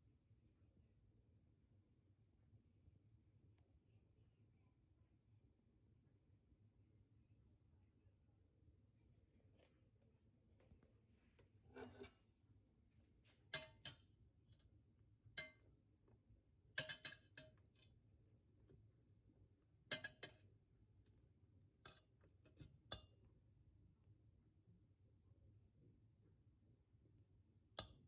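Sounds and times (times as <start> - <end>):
faint room hum: 0.0 - 28.0
clicks and clinks of hard objects: 16.8 - 17.9, 19.9 - 20.4.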